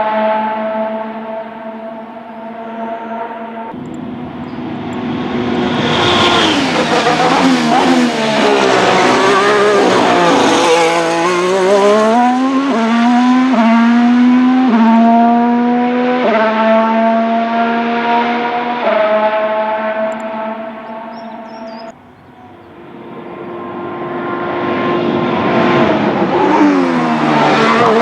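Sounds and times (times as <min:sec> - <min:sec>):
racing car engine accelerating: 0:00.0 - 0:28.0.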